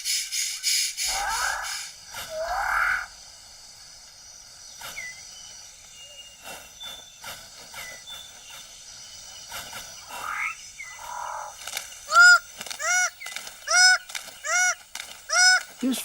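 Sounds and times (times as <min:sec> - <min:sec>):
harsh animal calls: 0:01.0 - 0:03.2, 0:10.0 - 0:15.8
scattered clicks: 0:11.6 - 0:15.8.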